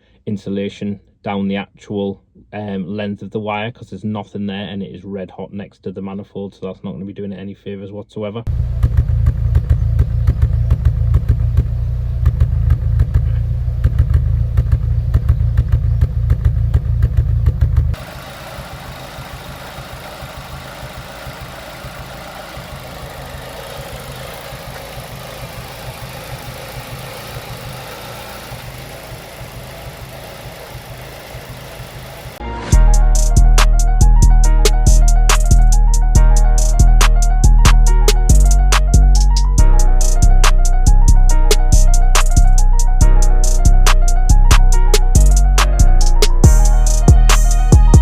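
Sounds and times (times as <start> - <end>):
car engine idling rough: 8.5 - 48.0.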